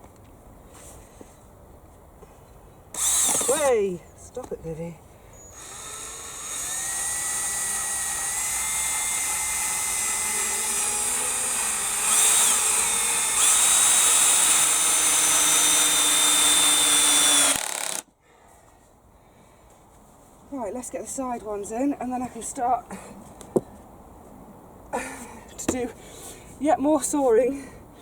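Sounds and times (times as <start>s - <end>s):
power drill driving a screw: 3.0s - 3.7s, 5.5s - 18.1s.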